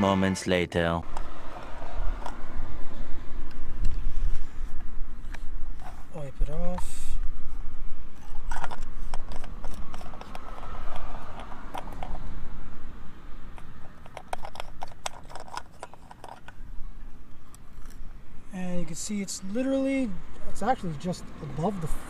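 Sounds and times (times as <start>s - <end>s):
small metallic clicks and knocks: 8.1s - 12.4s, 13.5s - 16.6s.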